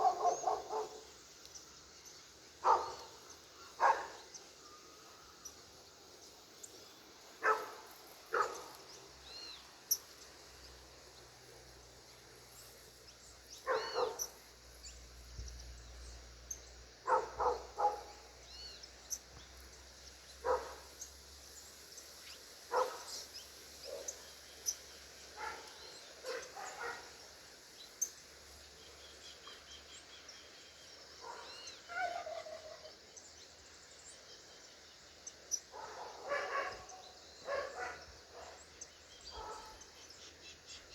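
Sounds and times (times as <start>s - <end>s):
dog barking: 0.0s - 1.0s, 2.6s - 3.1s, 3.8s - 4.2s, 7.4s - 8.7s, 13.7s - 14.3s, 17.0s - 18.2s, 20.4s - 20.8s, 22.7s - 23.1s, 25.4s - 27.2s, 31.2s - 32.6s, 35.7s - 38.6s, 39.3s - 39.8s
small birds chirping: 0.0s - 40.9s.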